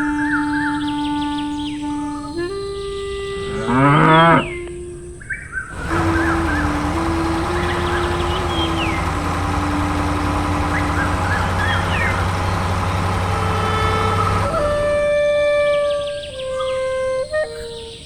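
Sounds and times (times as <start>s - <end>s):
flute-like melody: 0.0s - 18.0s
low mechanical hum: 4.4s - 18.0s.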